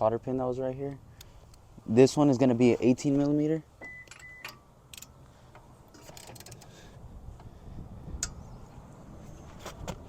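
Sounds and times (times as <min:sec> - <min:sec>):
metallic clicks of hand tools: 0:04.1 - 0:06.7.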